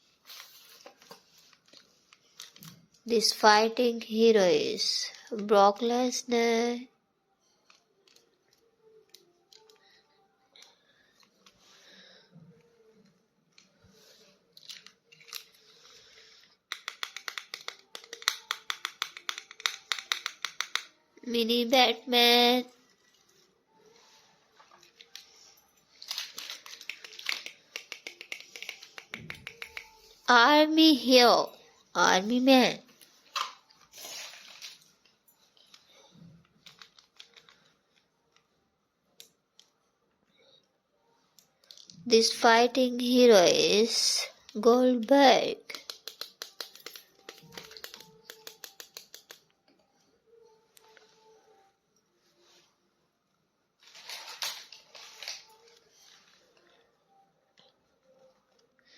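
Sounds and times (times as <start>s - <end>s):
light clicks of toy figures: 24.8s - 30.1s, 45.7s - 49.6s
plastic packaging rustling: 25.9s - 27.5s, 33.3s - 35.0s, 36.6s - 37.7s, 53.8s - 56.4s.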